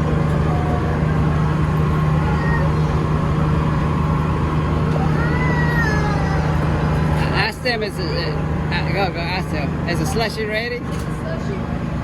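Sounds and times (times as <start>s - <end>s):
boat engine droning: 0.0s - 12.0s
faint high voices: 4.9s - 6.9s.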